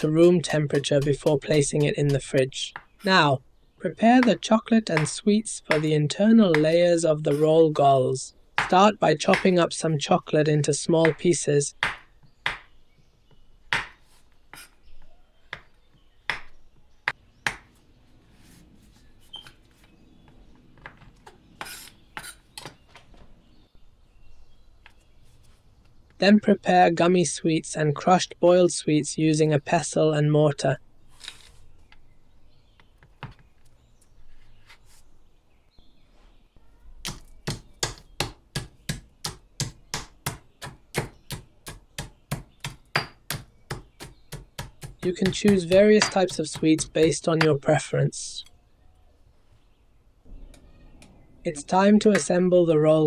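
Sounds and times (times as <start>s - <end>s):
knife chopping on a board: 0.0s - 3.0s, 5.0s - 5.9s, 11.0s - 12.7s, 13.7s - 14.0s, 17.5s - 17.7s, 37.0s - 47.2s
pestle pounding sweets in a mortar: 0.0s - 3.1s, 11.0s - 12.7s, 37.0s - 47.6s.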